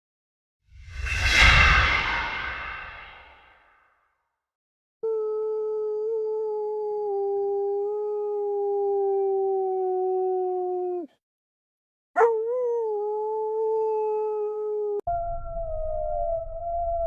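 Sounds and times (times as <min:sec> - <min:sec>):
dog howling: 0:05.1 - 0:11.1, 0:12.2 - 0:15.0.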